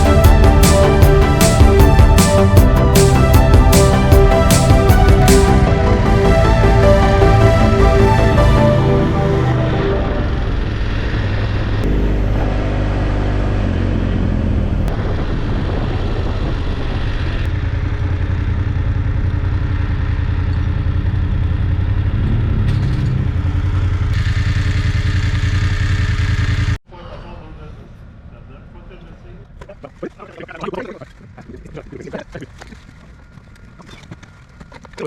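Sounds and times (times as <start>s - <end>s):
motorcycle engine running: 0.0s - 26.8s.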